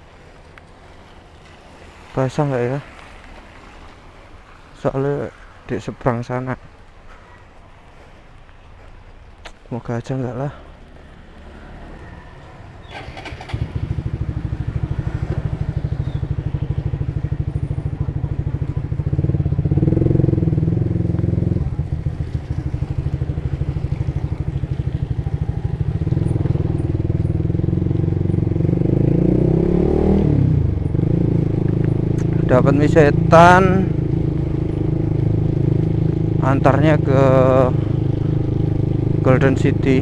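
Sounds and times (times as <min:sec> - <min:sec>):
motorcycle engine running: 0:12.8 - 0:40.0.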